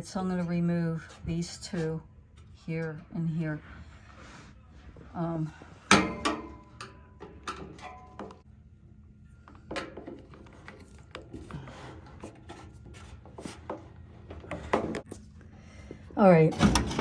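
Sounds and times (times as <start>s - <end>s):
clicks and knocks of metal parts: 5.8s - 8.4s, 9.5s - 11.6s.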